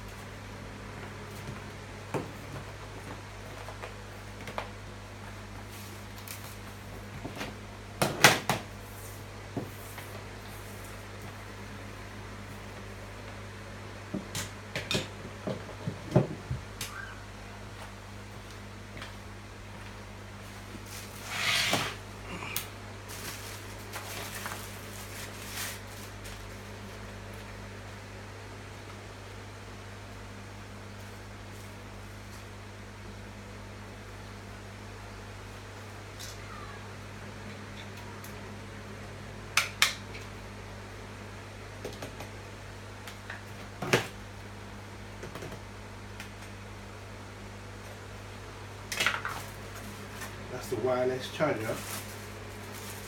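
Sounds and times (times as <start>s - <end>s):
steady electrical hum: 0.0s - 53.0s
handling rustles and scrapes: 20.5s - 22.0s, 23.0s - 27.0s, 51.6s - 53.0s.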